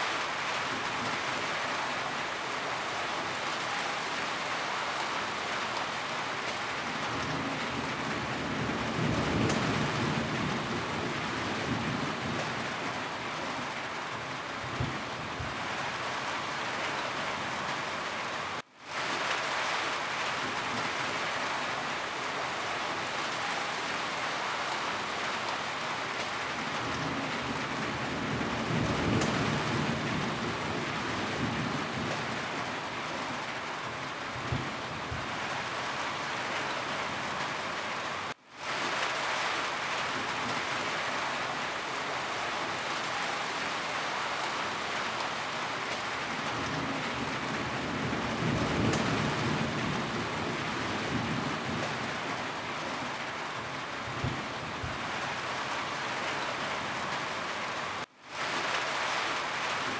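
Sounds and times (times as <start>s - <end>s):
rain on a roof: 0.0s - 59.9s.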